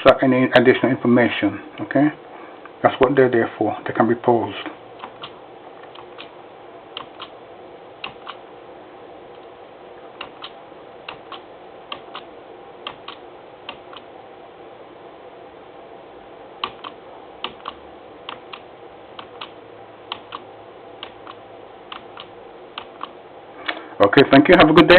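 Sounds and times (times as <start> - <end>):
steady low hiss: 0.0 - 24.9
light clicking: 7.0 - 7.4, 16.6 - 18.6, 19.2 - 20.4.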